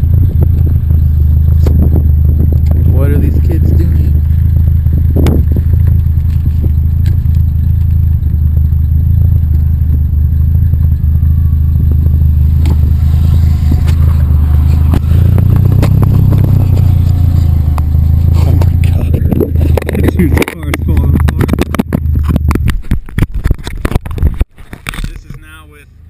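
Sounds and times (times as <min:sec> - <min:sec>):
wind buffeting camera: 0:00.0 - 0:25.6
clicks and rattles: 0:15.8 - 0:25.4.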